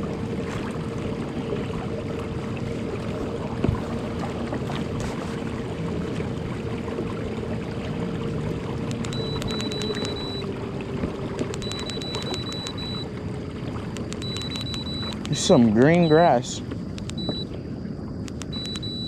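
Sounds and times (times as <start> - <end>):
faint steady hum: 0.0 - 19.0
water around a kayak: 0.0 - 19.0
wind: 0.0 - 19.0
thin high beep: 9.1 - 10.4, 11.6 - 13.1, 14.1 - 16.5
sharp click: 16.9 - 17.4.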